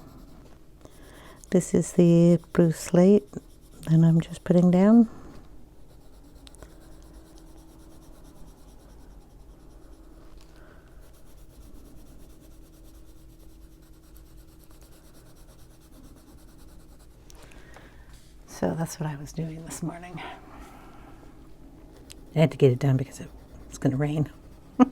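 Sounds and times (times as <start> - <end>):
pencil scratching on paper: 0.0 - 5.0, 5.8 - 17.2, 21.9 - 24.9
faint steady hum: 0.0 - 24.9.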